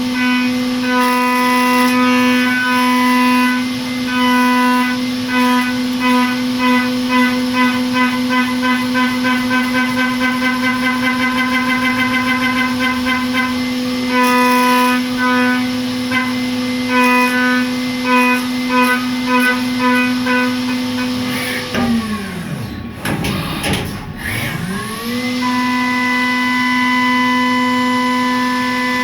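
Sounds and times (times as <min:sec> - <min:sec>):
milling machine whine cutting steel: 0:00.0 - 0:29.0.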